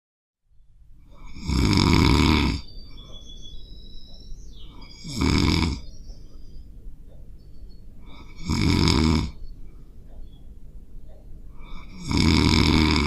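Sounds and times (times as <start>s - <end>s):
cat snoring: 1.1s - 2.7s, 4.9s - 5.8s, 8.0s - 9.4s, 11.6s - 13.0s
faint high whistling: 2.3s - 8.3s, 9.4s - 11.3s.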